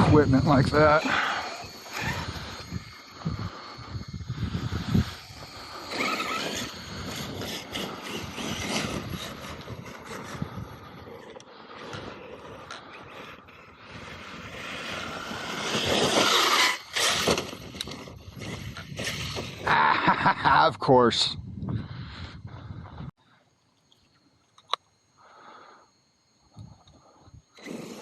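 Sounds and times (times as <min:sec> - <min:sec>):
rc truck motor whine: 0:00.0 - 0:19.7, 0:24.6 - 0:28.0
tyres on dirt and gravel: 0:00.0 - 0:19.9.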